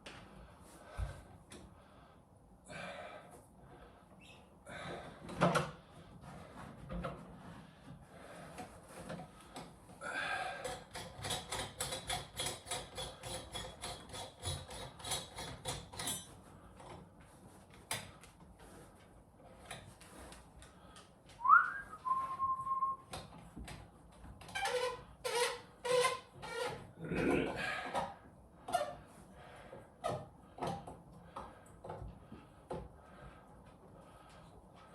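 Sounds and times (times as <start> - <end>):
person whistling: 21.4 - 23.1.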